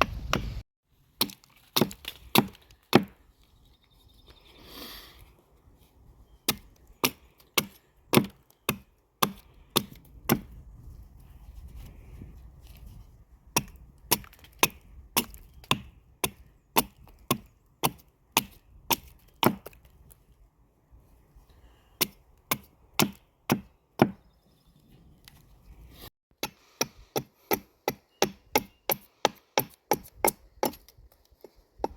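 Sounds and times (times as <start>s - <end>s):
axe chopping into wood: 1.2s - 3.2s, 6.5s - 10.6s, 13.5s - 19.8s, 22.0s - 24.2s, 26.4s - 30.9s.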